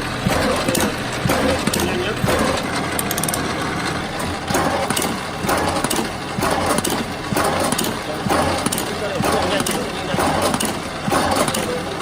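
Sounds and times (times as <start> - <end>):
paper drilling machine motor hum: 0.0 - 12.0.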